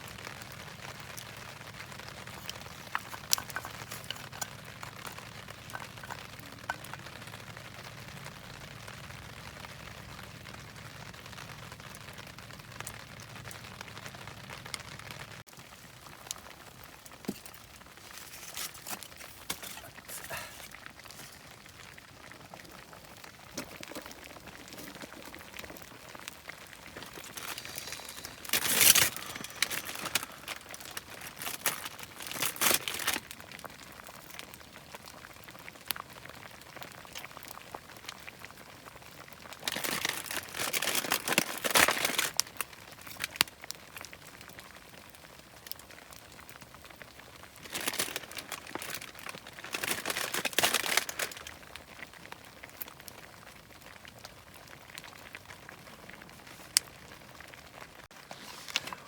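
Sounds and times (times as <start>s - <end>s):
wrapping crinkling: 0.6s - 7.0s, 16.9s - 34.4s, 39.4s - 43.4s, 47.4s - 52.0s, 58.1s - 59.0s.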